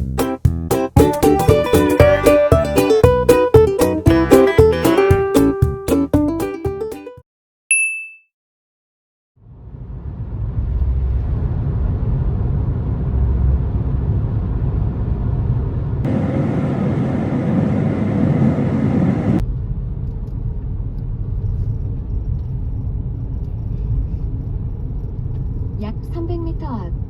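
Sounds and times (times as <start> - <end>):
car road and engine rumble: 9.4 - 27.0.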